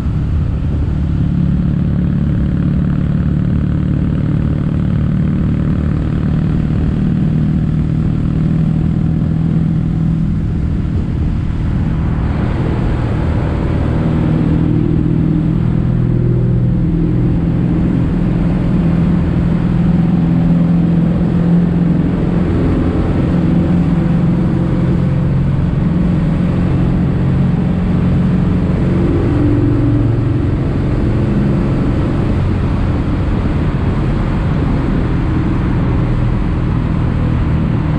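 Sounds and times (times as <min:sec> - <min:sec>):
motorcycle engine exhaust note: 0:00.0 - 0:37.9.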